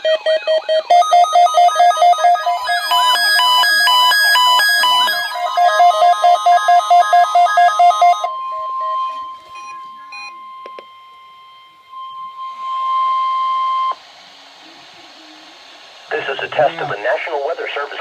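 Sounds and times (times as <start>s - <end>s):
steady warning alarm tone: 0.0s - 14.0s
fast electronic alert beeps: 0.2s - 10.6s.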